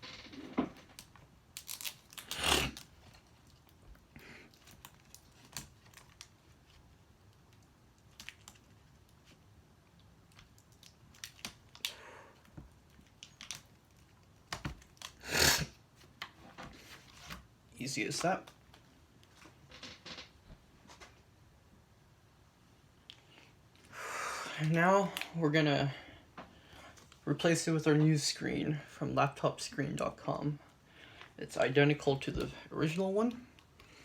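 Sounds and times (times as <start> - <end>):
tape peeling: 0.9 - 3.8.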